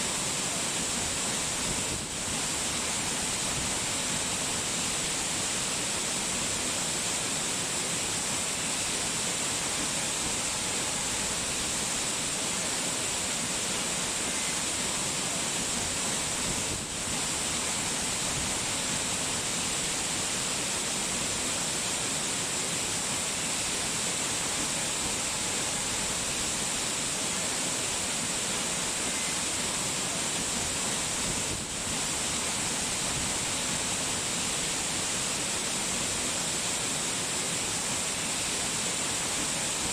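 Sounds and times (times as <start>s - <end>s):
falling water rushing: 0.0s - 39.9s.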